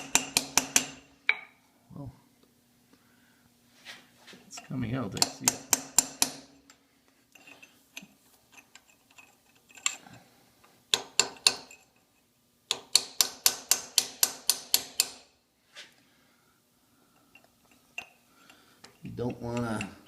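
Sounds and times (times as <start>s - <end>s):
chisel taps on metal: 0.0s - 1.5s, 10.9s - 11.7s, 12.7s - 15.2s.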